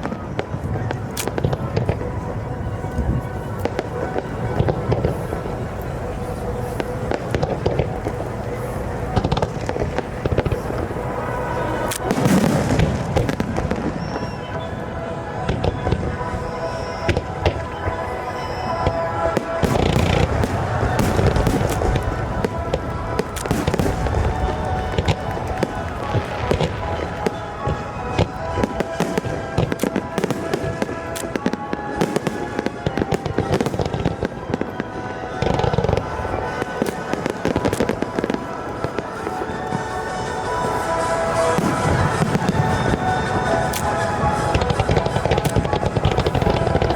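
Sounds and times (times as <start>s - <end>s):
fireworks bangs and crackles: 0.0s - 46.9s
music playing: 0.0s - 46.9s
heavy firework boom: 19.4s - 34.2s.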